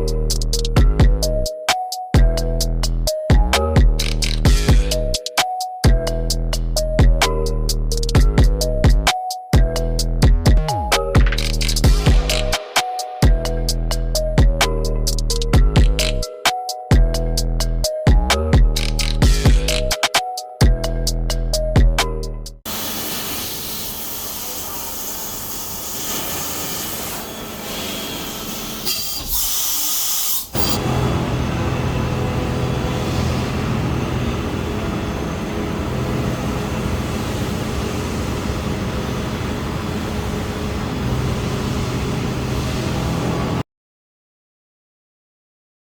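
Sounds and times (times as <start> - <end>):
shop machinery running: 22.7 - 43.6.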